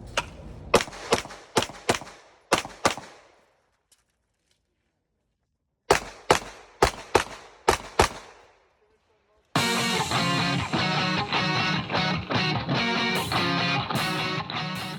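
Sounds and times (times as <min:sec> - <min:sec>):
pistol shots: 0:00.2 - 0:03.5, 0:05.9 - 0:08.8.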